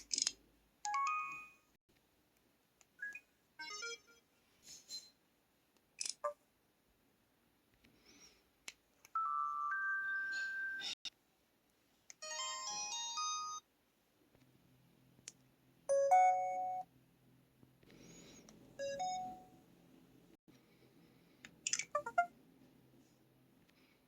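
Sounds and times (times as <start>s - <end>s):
phone alert chime: 9.2s - 11.0s, 18.8s - 19.5s.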